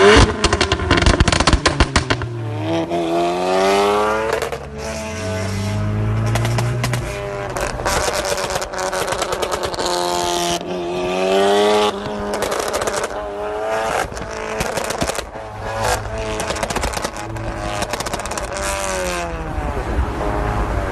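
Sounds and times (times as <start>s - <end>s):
exhaust crackles and pops: 0.0s - 2.3s, 6.2s - 10.7s, 11.9s - 13.2s, 13.8s - 19.0s
car engine revving: 0.0s - 20.9s.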